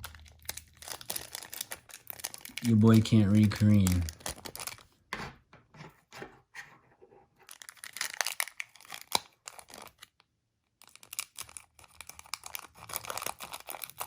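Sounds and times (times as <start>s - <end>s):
foil packs crinkling and tearing: 0.0s - 5.0s, 7.5s - 10.2s, 10.8s - 14.0s.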